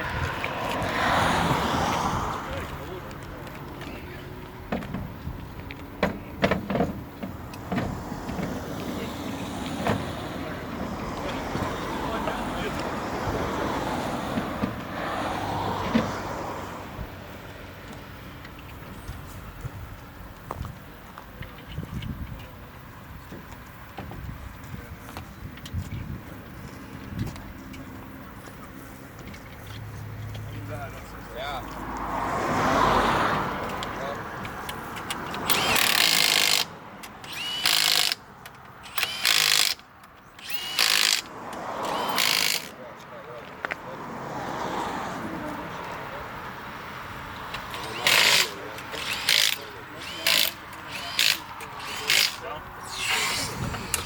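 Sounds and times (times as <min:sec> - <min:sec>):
vehicle noise: 0:00.0 - 0:54.0
impact wrench bursts: 0:35.2 - 0:38.2, 0:38.8 - 0:42.7, 0:47.6 - 0:54.0.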